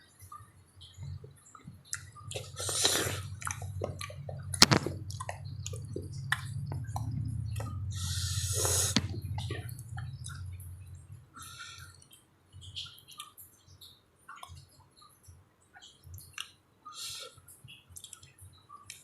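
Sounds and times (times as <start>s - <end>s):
low steady hum: 0.0s - 14.6s
wet smacking mouth clicks: 1.8s - 7.8s
slurping: 1.9s - 10.5s.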